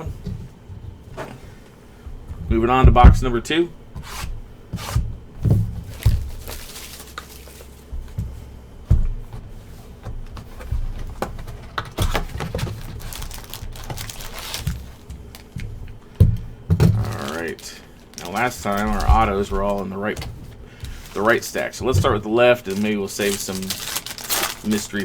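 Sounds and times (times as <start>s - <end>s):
plastic wrapper crinkling and tearing: 6.0s - 7.8s, 12.0s - 15.6s, 17.0s - 20.2s, 20.8s - 25.0s.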